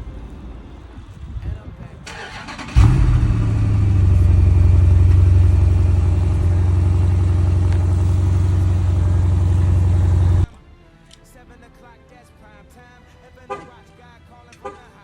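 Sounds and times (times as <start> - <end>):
car exhaust idling with deep rumble: 2.7 - 10.5.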